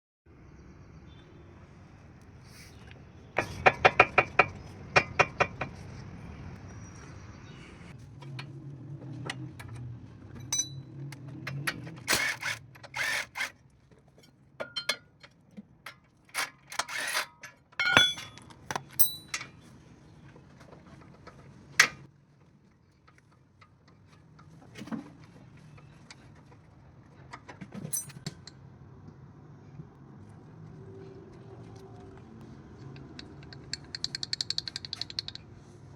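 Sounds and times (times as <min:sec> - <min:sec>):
metallic clicking and knocking: 0:03.4 - 0:05.8, 0:14.6 - 0:19.5, 0:32.9 - 0:35.5.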